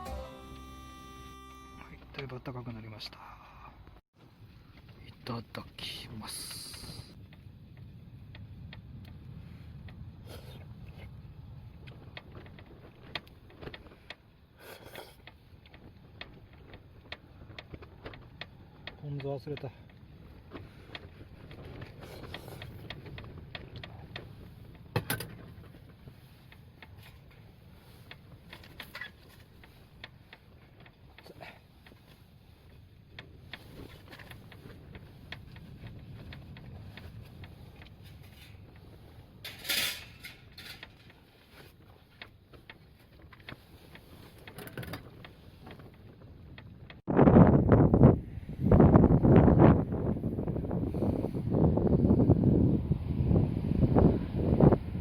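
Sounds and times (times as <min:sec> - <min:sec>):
small clicks and knocks: 0:15.2 - 0:47.0
wind gusting against tent: 0:15.2 - 0:55.0.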